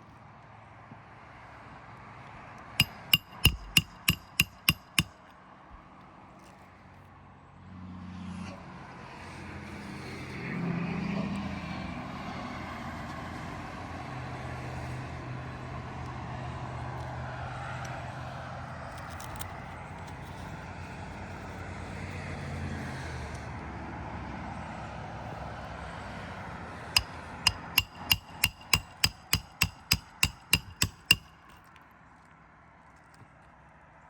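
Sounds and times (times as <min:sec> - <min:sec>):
hammer striking nail: 0:02.8 - 0:05.1, 0:27.0 - 0:31.6.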